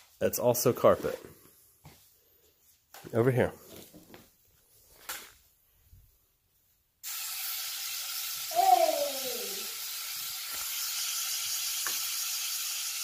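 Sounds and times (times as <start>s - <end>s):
suction fan hissing: 7.0s - 13.0s.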